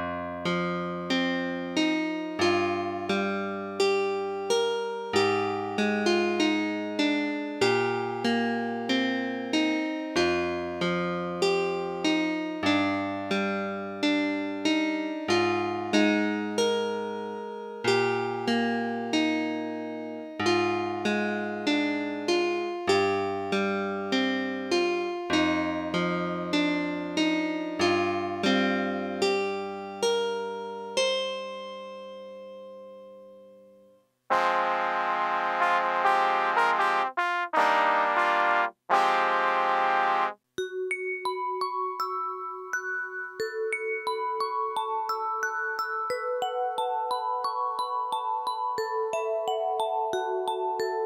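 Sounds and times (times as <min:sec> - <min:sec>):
electric piano keyboard: 0:00.0 - 0:33.6.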